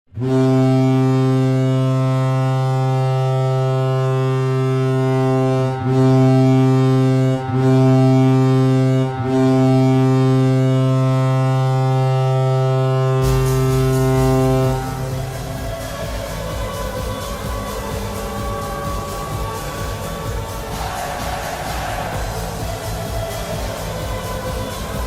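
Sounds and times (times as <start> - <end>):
deep goal horn blasts: 0.1 - 25.0.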